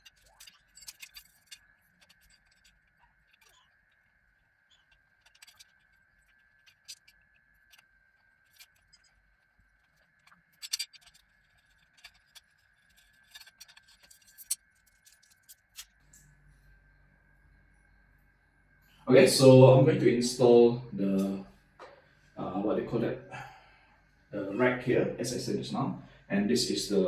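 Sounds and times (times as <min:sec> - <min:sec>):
metal parts clicking and scraping: 0:00.0 - 0:16.0
steady high-pitched hum: 0:00.0 - 0:27.0.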